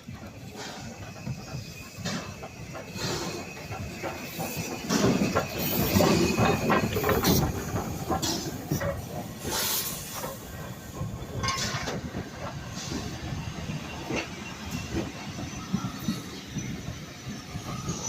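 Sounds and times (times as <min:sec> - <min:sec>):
steam hissing: 0:00.0 - 0:18.0
train clanking on rails: 0:00.0 - 0:18.0.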